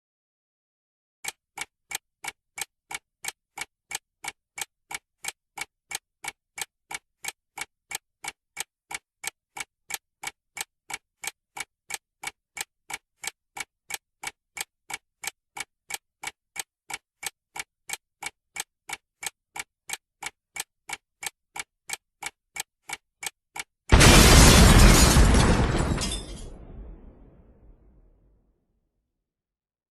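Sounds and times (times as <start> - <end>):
alarm clock ticking: 1.2 - 25.6
loud explosion blast: 23.9 - 28.0.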